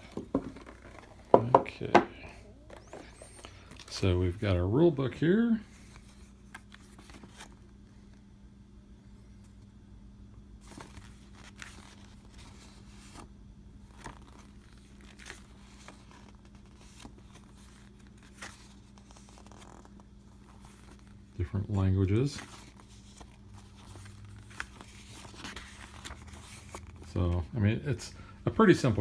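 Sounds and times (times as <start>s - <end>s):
paper pages rustling: 0.0s - 1.3s, 2.2s - 4.2s, 5.6s - 8.2s, 10.6s - 27.5s.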